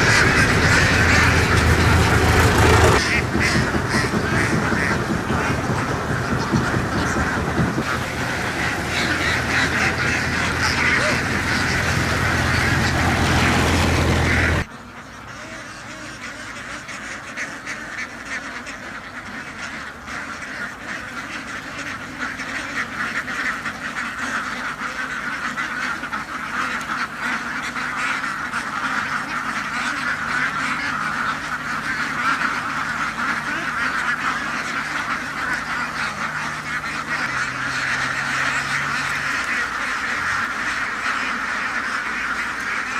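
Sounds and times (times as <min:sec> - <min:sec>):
low steady hum: 0:00.0 - 0:14.7
ducks quacking in chorus: 0:00.0 - 0:42.9.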